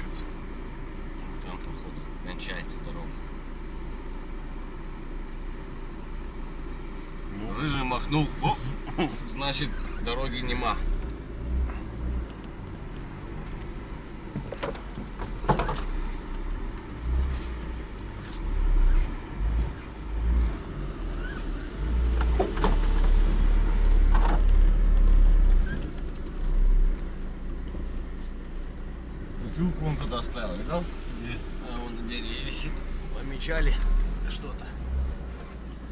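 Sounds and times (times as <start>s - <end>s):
car engine rumbling: 0.0s - 35.9s
car body and suspension rattles: 5.7s - 35.9s.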